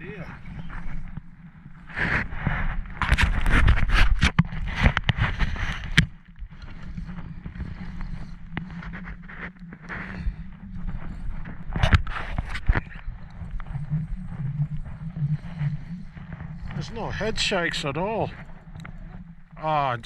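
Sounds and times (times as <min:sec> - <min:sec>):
fishing gear scraping and rustling: 0:00.0 - 0:19.6
steady low rumble: 0:06.2 - 0:20.0.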